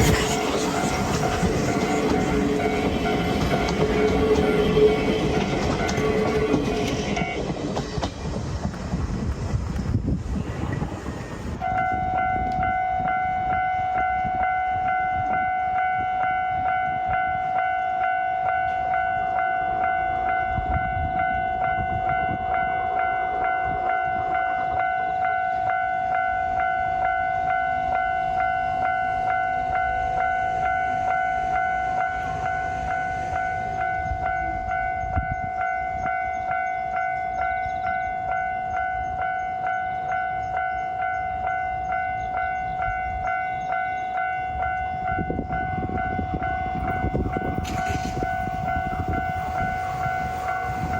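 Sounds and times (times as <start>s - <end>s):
train running: 0.0s - 50.9s
level crossing alarm: 11.6s - 50.9s.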